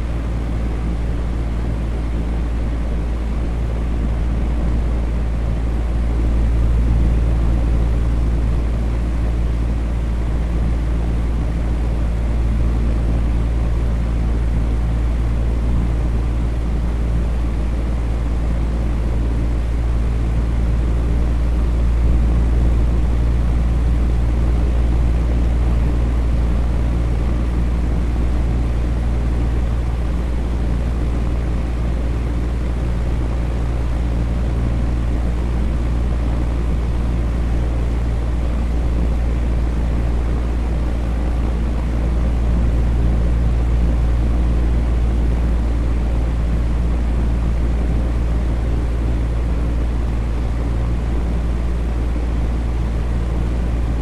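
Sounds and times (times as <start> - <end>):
electric fan running: 0.0 - 54.0.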